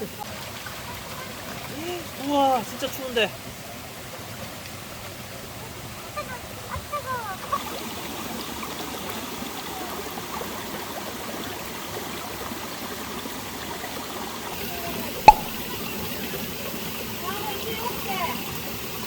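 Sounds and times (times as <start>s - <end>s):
sharp knock: 15.3s - 15.7s.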